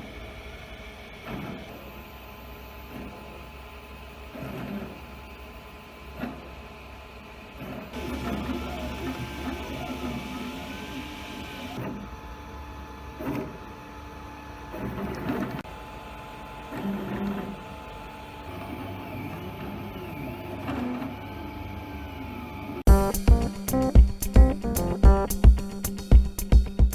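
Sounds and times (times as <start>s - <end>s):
stepper motors whining: 0.0s - 15.6s.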